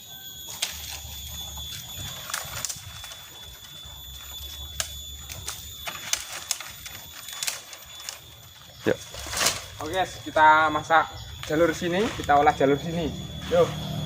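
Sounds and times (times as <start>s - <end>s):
steady high-pitched whine: 0.0s - 14.0s
dry twigs snapping and crackling: 0.5s - 10.0s.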